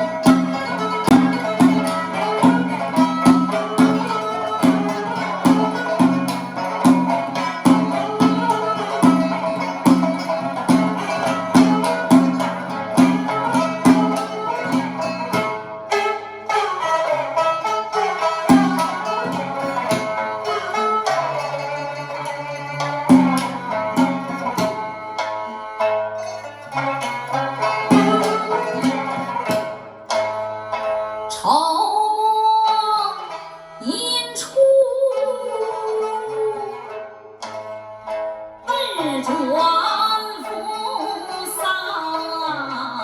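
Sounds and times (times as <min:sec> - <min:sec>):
percussion strikes: 0:00.0 - 0:31.4
plucked strings ensemble: 0:00.0 - 0:43.0.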